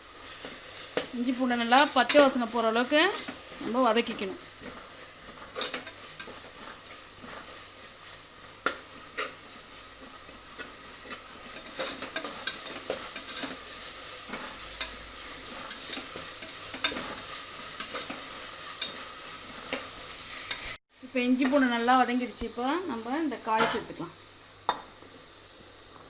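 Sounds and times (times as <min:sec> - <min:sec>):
food sizzling in oil: 0:00.0 - 0:26.0.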